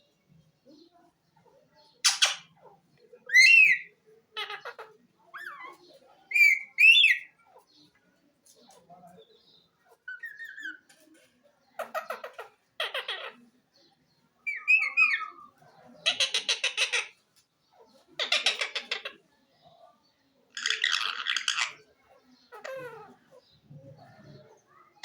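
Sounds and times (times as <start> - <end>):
parrot squawking: 2.0 - 2.6, 3.3 - 7.3, 11.8 - 13.4, 14.5 - 15.4, 16.0 - 17.2, 18.2 - 19.2, 20.6 - 21.8, 22.5 - 23.4.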